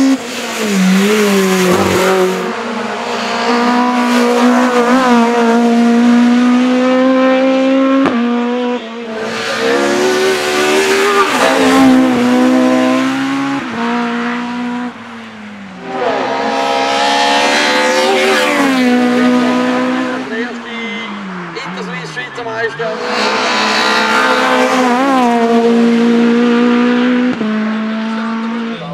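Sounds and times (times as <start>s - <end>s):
race car engine accelerating: 0.0s - 15.0s, 15.8s - 20.6s, 21.5s - 28.9s.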